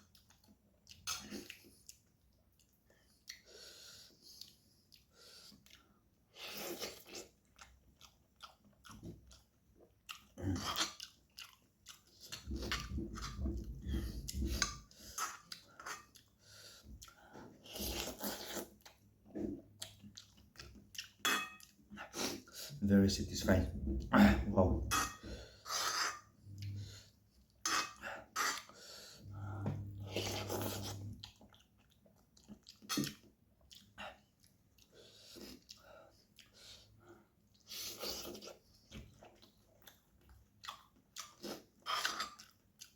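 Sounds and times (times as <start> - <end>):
person chewing noodles: 0.0 - 22.9, 24.0 - 42.9
noodle slurping: 25.4 - 31.5.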